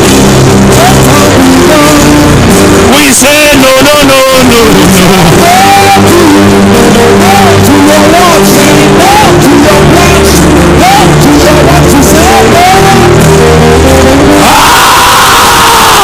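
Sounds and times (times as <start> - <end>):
church keyboard chords: 0.0 - 14.7
long loud held cry: 14.2 - 16.0
voices crying out: 14.2 - 16.0.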